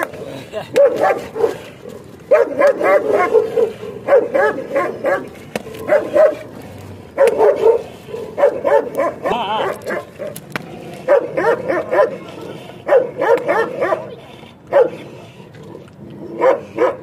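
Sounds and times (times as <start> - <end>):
dog yapping: 2.3 - 6.5, 7.2 - 10.4, 11.1 - 12.2, 12.9 - 15.0.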